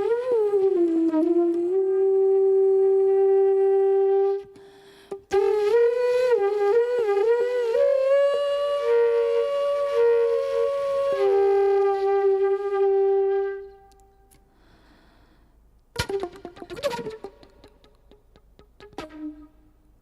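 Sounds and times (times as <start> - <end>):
flute-like wind instrument: 0.0 - 14.3, 16.0 - 17.5.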